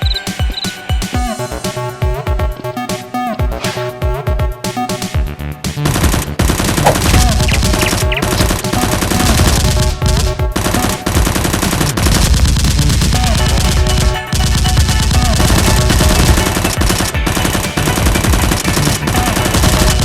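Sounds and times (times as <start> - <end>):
electronic background music: 0.0 - 20.0
automatic gunfire: 5.8 - 20.0.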